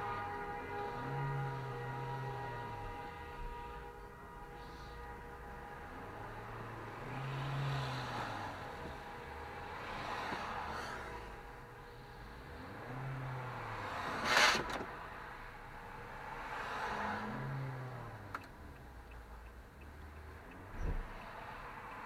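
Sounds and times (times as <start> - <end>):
car drivetrain humming: 0.0 - 22.0.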